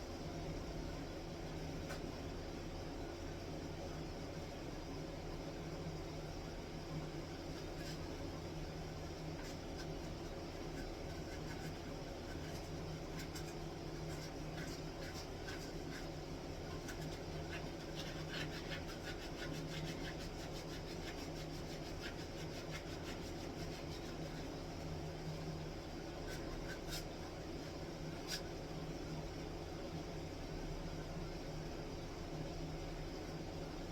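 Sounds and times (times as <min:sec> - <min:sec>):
steady low hum: 0:00.0 - 0:33.9.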